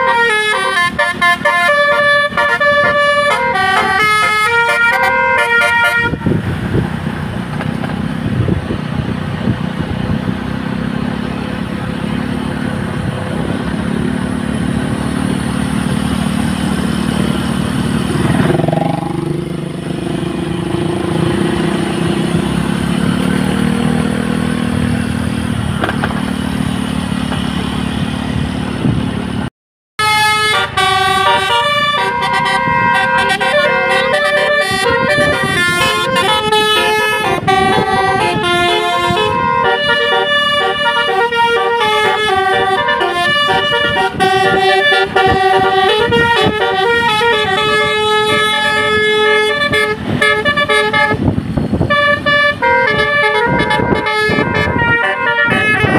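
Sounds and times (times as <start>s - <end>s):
bus musical horn tune: 0.0s - 6.5s, 30.0s - 55.9s
vehicle engine and road noise: 0.0s - 55.9s.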